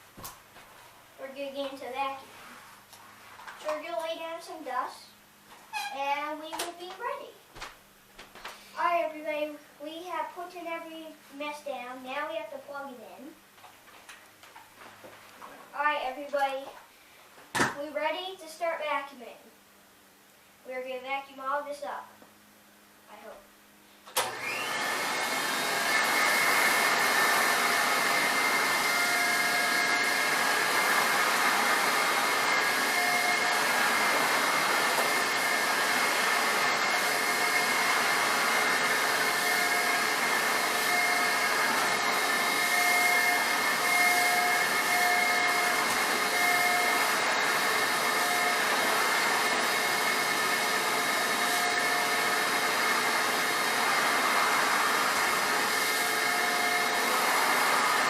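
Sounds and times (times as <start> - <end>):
vacuum cleaner running: 24.1 - 58.0.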